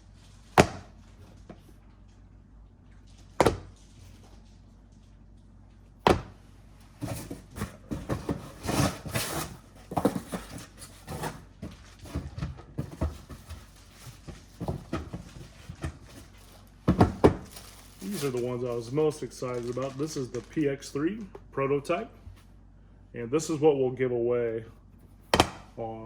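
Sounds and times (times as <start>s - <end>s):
plastic discs thudding down: 3.4s - 3.8s, 6.0s - 6.4s, 25.3s - 25.8s
discs clattering and rustling: 7.0s - 20.6s.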